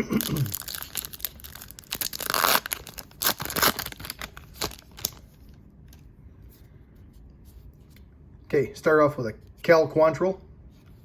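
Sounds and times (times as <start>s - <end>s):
plastic wrapper tearing and crinkling: 0.2s - 5.3s.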